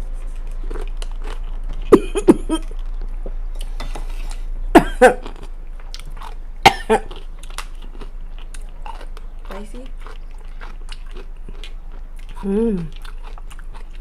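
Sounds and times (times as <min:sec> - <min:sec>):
pickle crunching: 0:00.0 - 0:14.0
throat sounds: 0:01.9 - 0:02.7.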